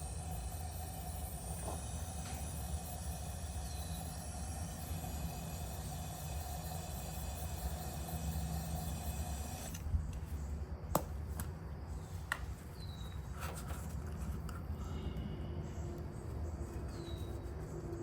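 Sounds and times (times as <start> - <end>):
powder coating gun hissing: 0.0 - 9.8.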